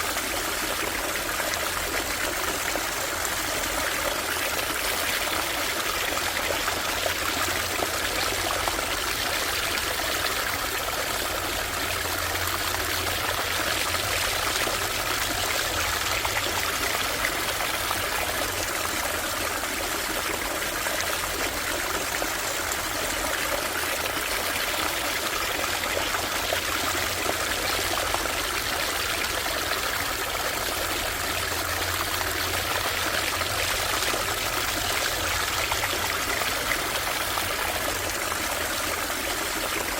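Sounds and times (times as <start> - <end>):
stream trickling over stones: 0.0 - 39.9.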